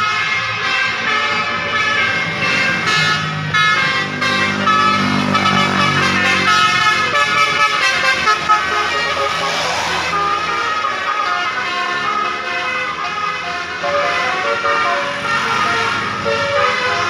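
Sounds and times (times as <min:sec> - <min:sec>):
bus air horn melody: 0:00.0 - 0:17.0
rising siren-like sweep: 0:08.9 - 0:17.0.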